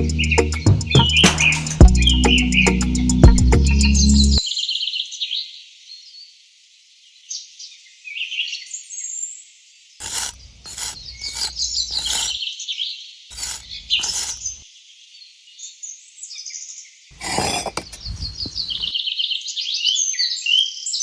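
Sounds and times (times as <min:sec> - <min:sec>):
small birds chirping: 0:17.8 - 0:18.9.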